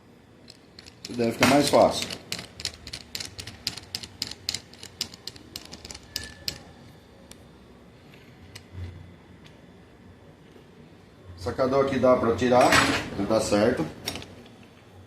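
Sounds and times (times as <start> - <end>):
gear puller metal clicking: 0.5 - 6.7.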